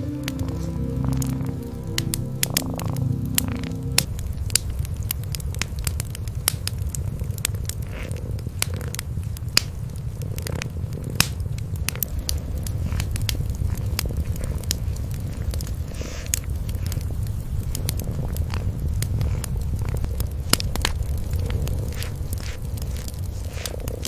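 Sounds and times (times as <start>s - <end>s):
cats purring: 0.0s - 24.0s
wood fire crackling: 0.0s - 24.0s.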